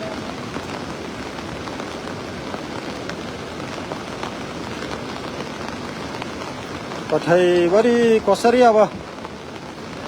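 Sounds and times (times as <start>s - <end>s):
rushing floodwater: 0.0s - 10.0s.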